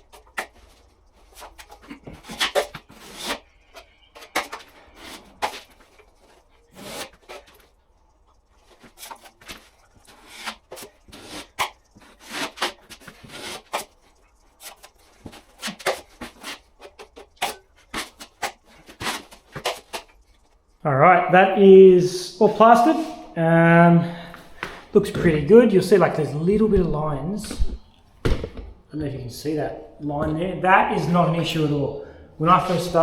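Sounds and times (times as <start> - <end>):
trowel scraping plaster: 1.2 - 3.6, 8.8 - 14.0.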